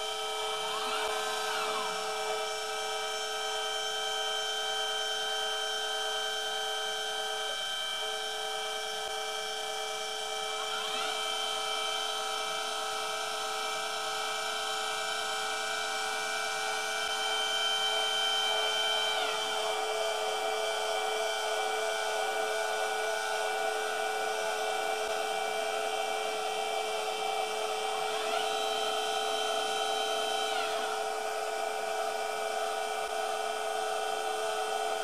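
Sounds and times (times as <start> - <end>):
servo motors whining: 0.0 - 13.0, 27.5 - 33.6.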